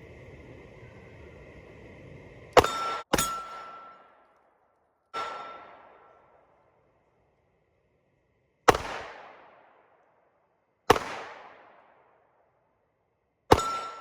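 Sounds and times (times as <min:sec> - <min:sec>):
sharp bangs: 0:05.1 - 0:06.4.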